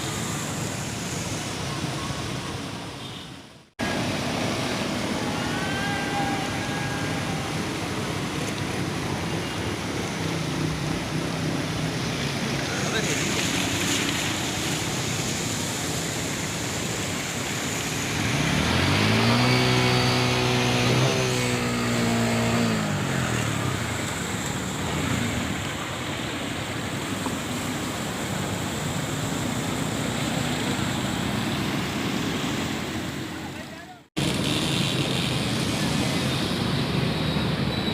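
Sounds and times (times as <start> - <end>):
rain on wet street: 0.0 - 19.8, 21.5 - 37.9
vehicle passing by: 18.0 - 25.9.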